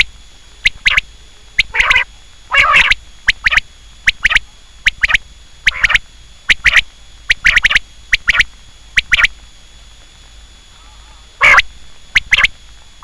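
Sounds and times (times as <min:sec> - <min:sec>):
quail calling: 0:01.6 - 0:09.3, 0:10.8 - 0:12.5.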